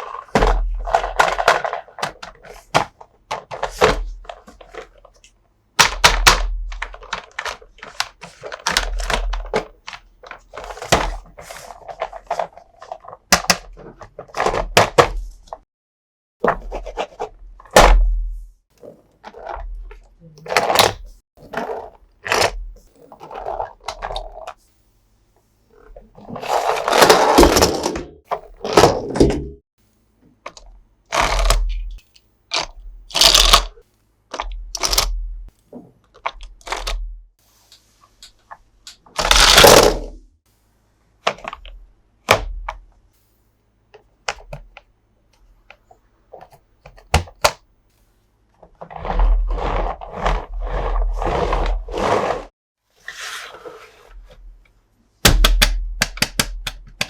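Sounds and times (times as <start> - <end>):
toy packaging crackling: 32.5 - 33.7.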